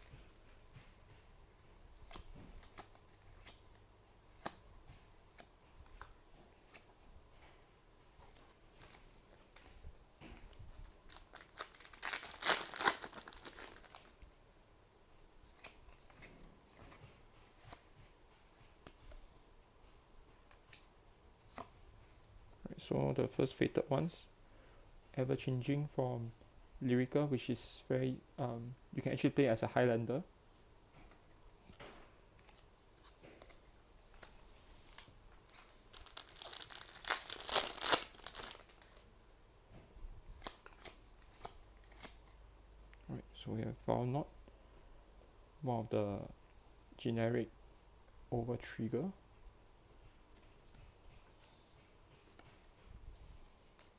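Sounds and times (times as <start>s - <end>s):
cards being handled: 0.0s - 7.6s, 8.3s - 14.2s, 32.4s - 39.0s, 40.3s - 42.4s
foil wrapper tearing and crinkling: 11.1s - 14.1s, 34.9s - 39.0s.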